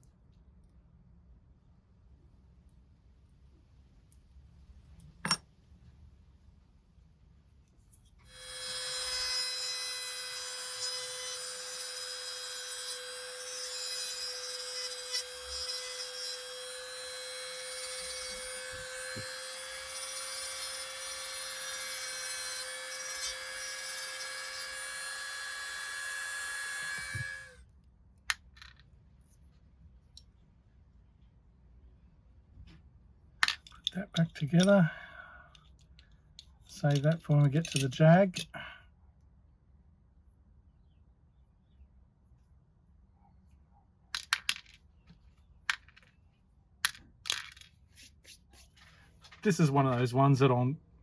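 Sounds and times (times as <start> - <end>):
electric rotary tool whining: 8.3 - 27.6.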